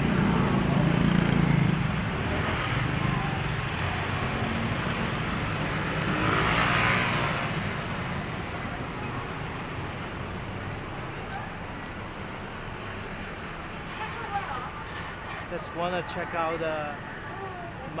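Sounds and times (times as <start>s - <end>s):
road noise: 0.0s - 18.0s.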